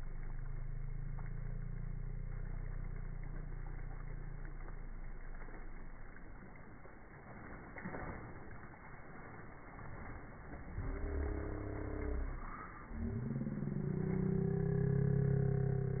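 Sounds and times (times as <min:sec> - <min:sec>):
motor engine hum: 0:00.0 - 0:16.0
steady outdoor rush: 0:10.5 - 0:16.0.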